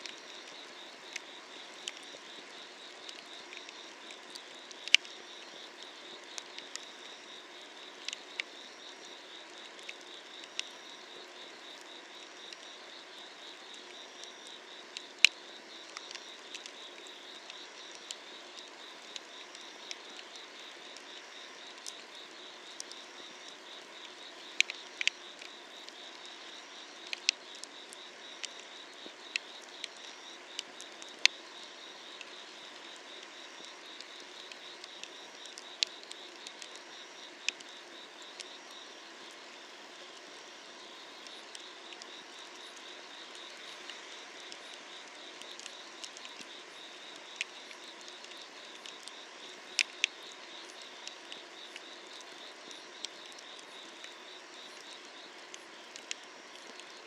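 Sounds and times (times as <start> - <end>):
night insects chirping: 0.0 - 57.0
wood fire crackling and popping: 54.8 - 57.0.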